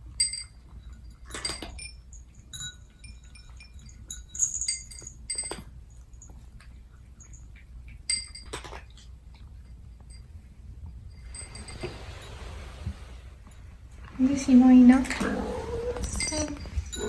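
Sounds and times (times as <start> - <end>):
cats eating dry kibble: 0.0 - 17.0
food bowls clinking: 0.1 - 6.2, 11.1 - 12.9, 13.5 - 17.0.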